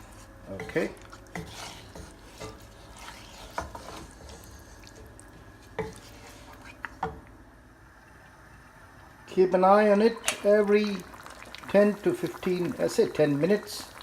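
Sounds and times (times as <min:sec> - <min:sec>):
spoon stirring in a cooking pot: 0:00.0 - 0:07.3
spoon scraping and knocking pot: 0:00.6 - 0:04.5.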